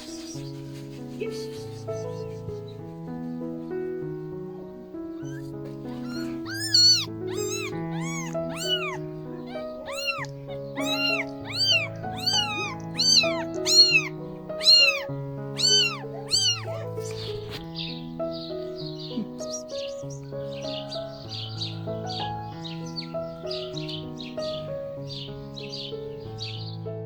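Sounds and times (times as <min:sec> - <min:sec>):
soft background music: 0:00.0 - 0:27.0
cat meowing: 0:05.1 - 0:17.6, 0:19.1 - 0:20.9.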